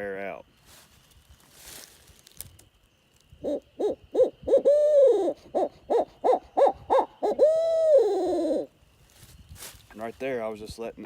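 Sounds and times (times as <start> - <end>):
owl hooter call: 3.4 - 8.7.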